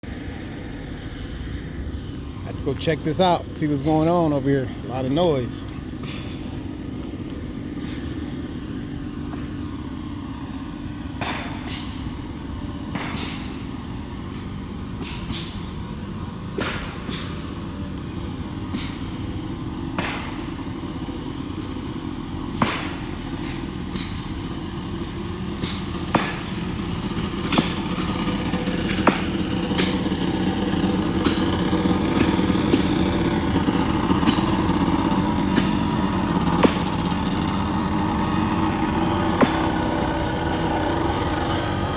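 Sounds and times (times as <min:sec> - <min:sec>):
engine-like drone: 0:00.0 - 0:41.9
sharp knocks on tracks: 0:11.1 - 0:19.2, 0:19.9 - 0:21.0, 0:22.5 - 0:41.9.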